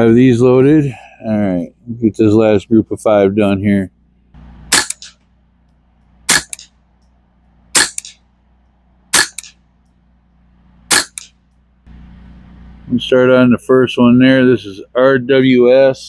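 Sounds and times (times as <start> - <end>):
fainter echoing crack: 4.0 - 12.0
rifle shots: 4.6 - 5.2, 6.3 - 6.8, 7.7 - 8.3, 9.1 - 9.7, 10.9 - 11.4.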